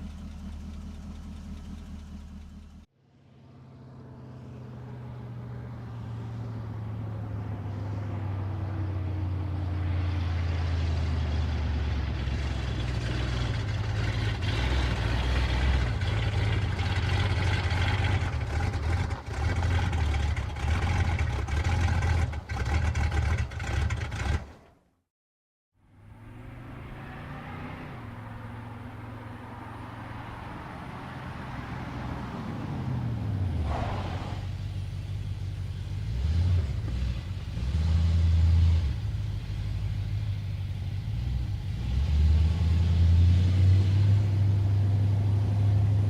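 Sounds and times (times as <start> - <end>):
car engine running under load: 0.0 - 2.9, 4.4 - 24.7.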